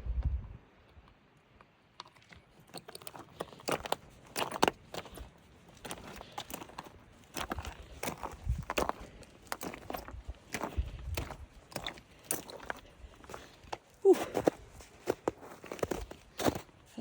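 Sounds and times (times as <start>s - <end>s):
footsteps crunching through snow: 3.0s - 17.0s.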